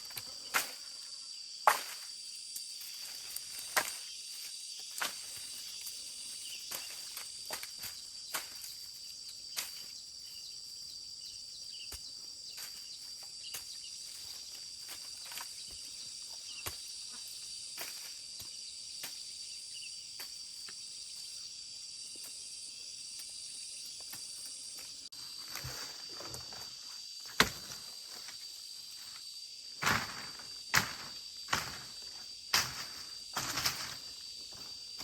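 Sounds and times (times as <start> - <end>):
insects chorus: 0.0 - 35.0.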